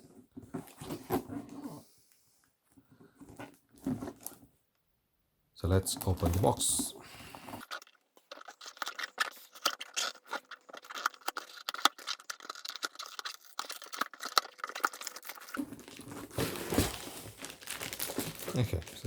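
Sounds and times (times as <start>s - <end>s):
packaging clicks and rustles: 5.8s - 6.9s, 7.5s - 19.0s
cardboard tearing: 8.6s - 19.0s.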